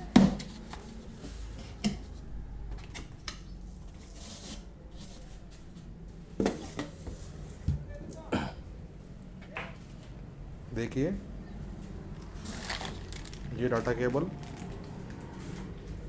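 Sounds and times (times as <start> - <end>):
packaging rustling: 12.2 - 16.0.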